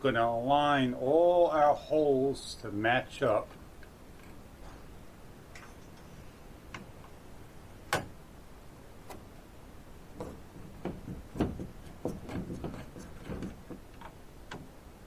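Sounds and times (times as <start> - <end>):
fan housing clicks and knocks: 7.9 - 8.2, 10.2 - 14.7.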